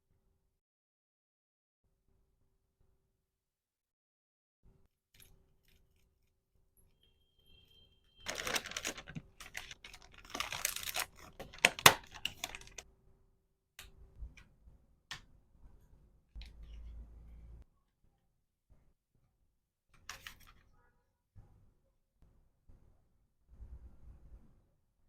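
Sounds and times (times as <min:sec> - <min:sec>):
plastic packaging crinkling: 0:08.2 - 0:12.8
small hard items clicking: 0:08.3 - 0:12.8.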